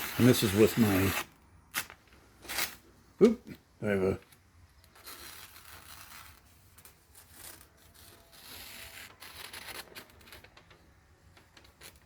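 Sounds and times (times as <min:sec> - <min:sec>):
knife slicing through paper: 0:00.0 - 0:01.3, 0:05.0 - 0:10.4.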